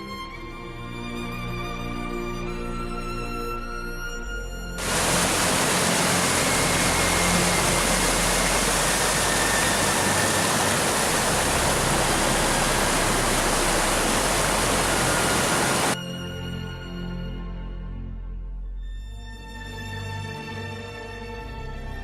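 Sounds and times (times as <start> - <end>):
mountain torrent rushing: 4.8 - 16.0.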